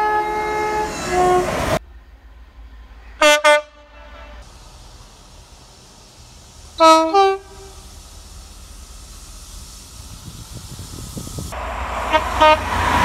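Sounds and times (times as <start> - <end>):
two-tone train horn: 0.0 - 1.8, 3.2 - 4.4, 6.8 - 7.8, 12.0 - 13.0
train rumble: 0.0 - 13.0.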